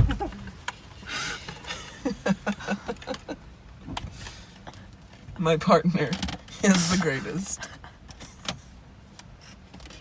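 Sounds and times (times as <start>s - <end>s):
man laughing: 0.0s - 0.4s, 1.6s - 3.5s.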